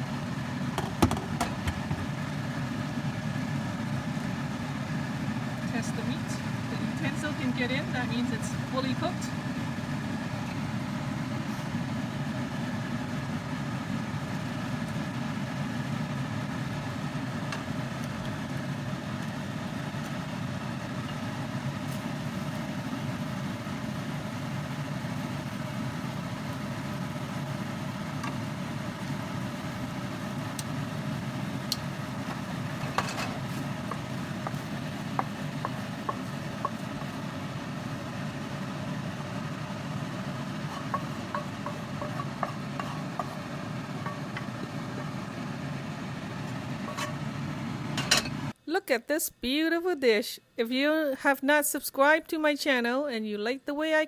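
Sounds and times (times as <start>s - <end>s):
food cooking in a pan: 0.0s - 48.6s
mechanical fan hum: 0.0s - 50.0s
utensil clicking against pan: 40.6s - 44.6s.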